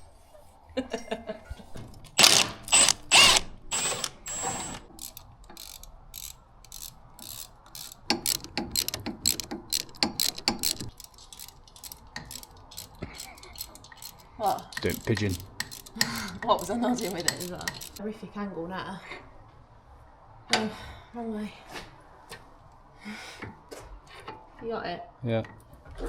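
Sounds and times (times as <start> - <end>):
ratchet wrench clicking: 2.2 - 18.0.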